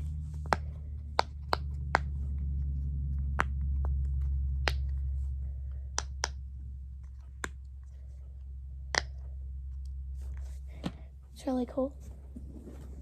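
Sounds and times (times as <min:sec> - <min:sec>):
steady low hum: 0:00.0 - 0:13.0
silicone fidget toy popping: 0:03.2 - 0:05.1, 0:05.9 - 0:07.6.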